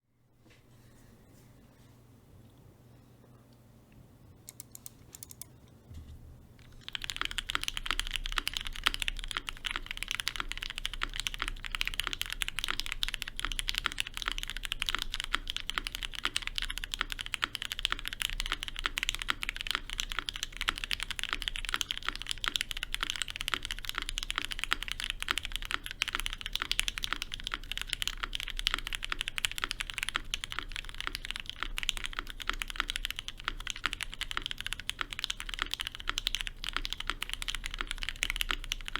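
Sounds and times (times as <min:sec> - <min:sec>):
mechanical keyboard typing: 0:04.5 - 0:05.6, 0:06.6 - 0:38.9.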